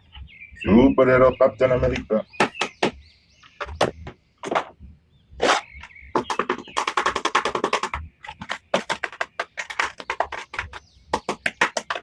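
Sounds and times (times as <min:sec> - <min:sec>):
sharp clicks and taps: 0:05.8 - 0:12.0.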